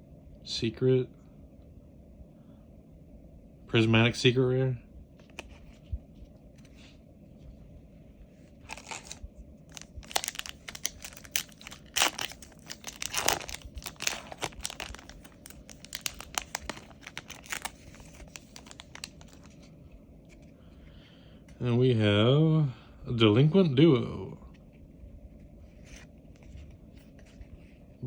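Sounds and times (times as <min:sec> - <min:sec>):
foil wrapper crinkling and tearing: 0:08.6 - 0:19.7.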